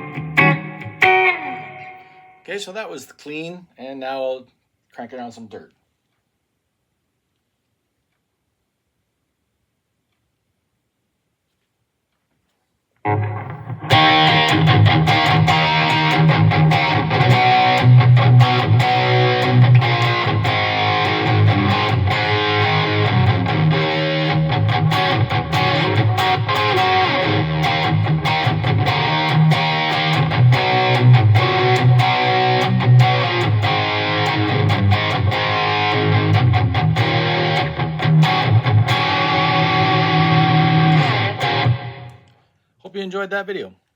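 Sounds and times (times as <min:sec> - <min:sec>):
distorted electric guitar: 0:00.0 - 0:02.5, 0:13.0 - 0:42.4.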